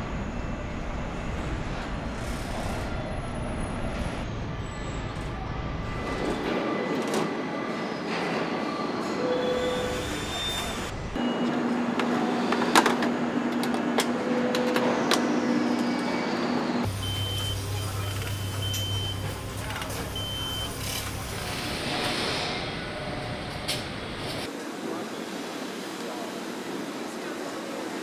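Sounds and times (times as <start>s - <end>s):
machinery humming: 15.4s - 24.4s.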